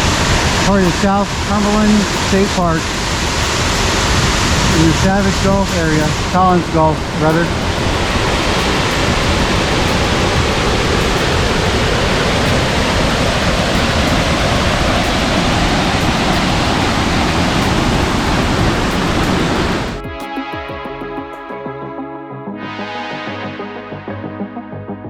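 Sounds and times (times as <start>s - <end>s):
waterfall roaring: 0.0s - 20.0s
background music: 0.0s - 25.0s.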